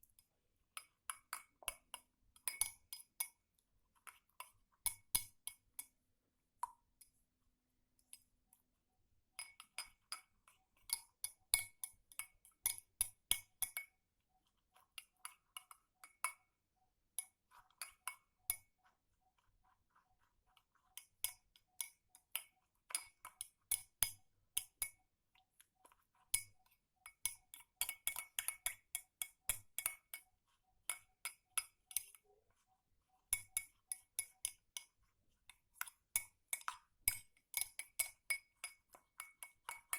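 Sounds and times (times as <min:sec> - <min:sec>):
spoon clinking in a cup: 0:00.0 - 0:06.0, 0:09.4 - 0:14.0, 0:14.8 - 0:39.9.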